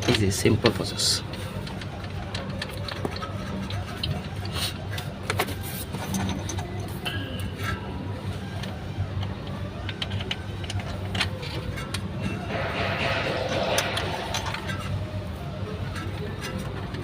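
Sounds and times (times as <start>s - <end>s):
steady low hum: 12.2s - 16.5s.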